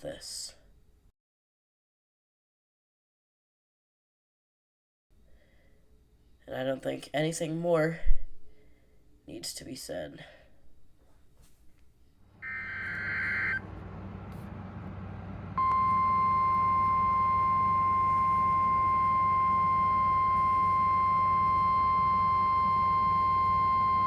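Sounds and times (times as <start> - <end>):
low hum and hiss: 5.2 - 24.0
steady warning alarm tone: 12.4 - 13.6, 15.6 - 24.0
warbling data tones: 12.4 - 13.6.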